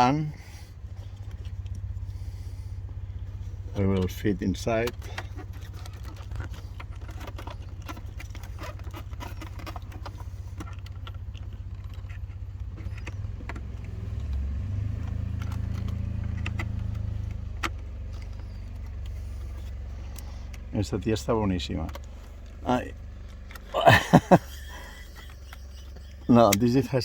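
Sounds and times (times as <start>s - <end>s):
plastic parts clicking and knocking: 3.9s - 20.6s.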